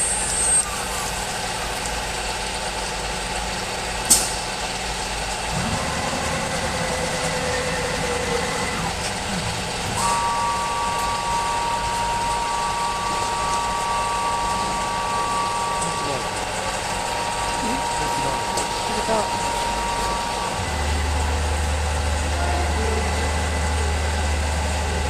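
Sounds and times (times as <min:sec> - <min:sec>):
high whine: 0:00.0 - 0:03.8, 0:04.8 - 0:25.0
machinery running: 0:00.0 - 0:25.0
sharp click: 0:04.1 - 0:04.4.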